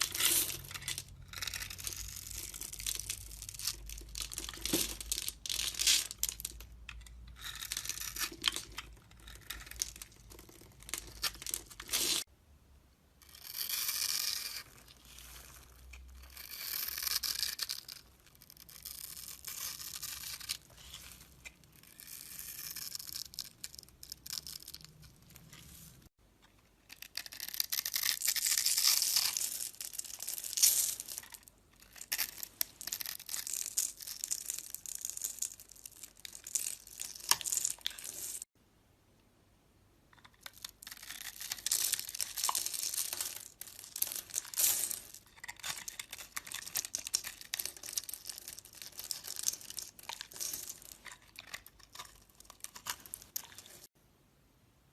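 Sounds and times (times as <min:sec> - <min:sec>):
blade scraping soap: 0:13.2 - 0:24.6.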